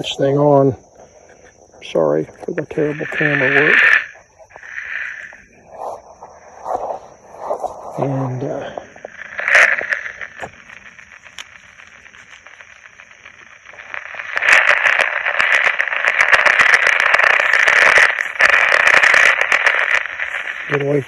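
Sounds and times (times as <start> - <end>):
radio static hissing and crackling: 0.0 - 21.0.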